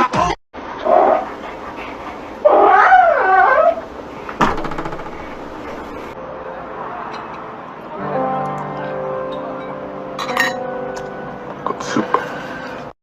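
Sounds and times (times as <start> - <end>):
dog whining: 2.4 - 3.9.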